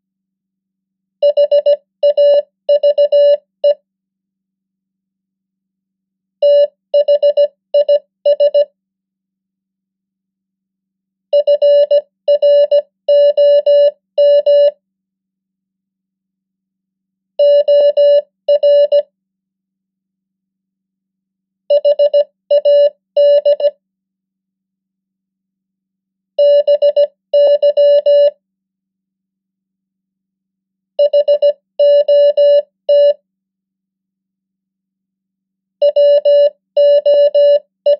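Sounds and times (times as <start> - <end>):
morse code beeps: 1.2 - 3.8, 6.4 - 8.7, 11.4 - 14.8, 17.4 - 19.0, 21.7 - 23.7, 26.4 - 28.4, 31.0 - 33.2, 35.8 - 37.9.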